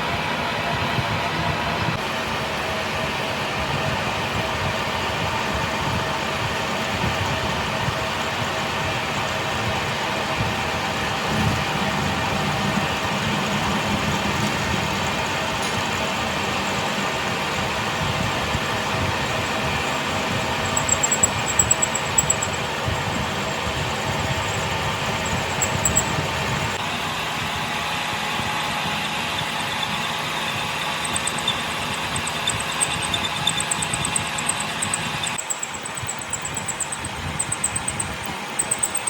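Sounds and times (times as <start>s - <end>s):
machine running with low rumble: 0.7s - 39.0s
faint rapid high ticking: 19.2s - 26.8s, 29.4s - 39.0s.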